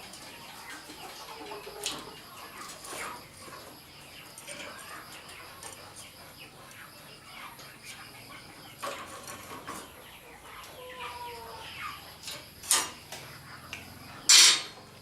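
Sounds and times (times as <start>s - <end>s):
sharp noisy clank: 14.3s - 14.8s.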